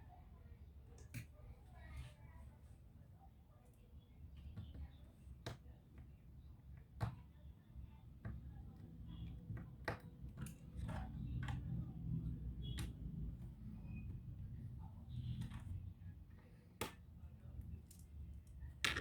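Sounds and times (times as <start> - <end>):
small clicks and taps of parts: 16.8 - 19.0.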